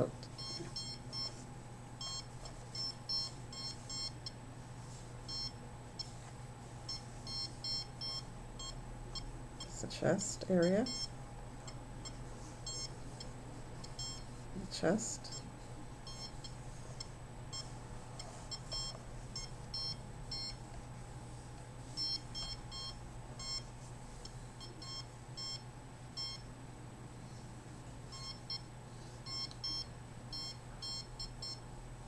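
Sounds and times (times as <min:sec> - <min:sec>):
steady low hum: 0:00.0 - 0:32.0
meter alarm high-pitched beeps: 0:00.4 - 0:01.4, 0:02.0 - 0:04.4, 0:05.3 - 0:06.1, 0:06.9 - 0:09.8, 0:10.6 - 0:11.1, 0:11.7 - 0:13.3, 0:13.9 - 0:14.3, 0:16.1 - 0:17.7, 0:18.5 - 0:20.6, 0:21.9 - 0:23.7, 0:24.6 - 0:25.6, 0:26.2 - 0:26.5, 0:28.1 - 0:31.6.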